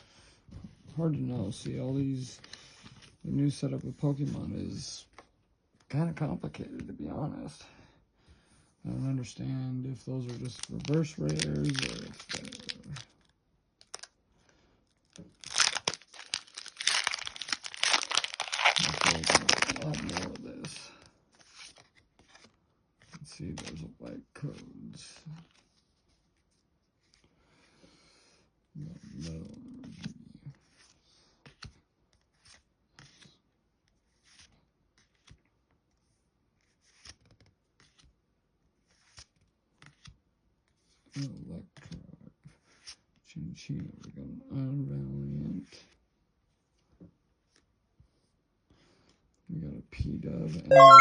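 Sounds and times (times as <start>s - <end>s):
cards being flipped by hand: 10.2s - 14.2s, 14.9s - 24.6s, 29.9s - 33.3s, 34.0s - 38.2s, 38.8s - 41.2s
foil wrapper tearing and crinkling: 10.5s - 13.0s, 15.2s - 20.4s.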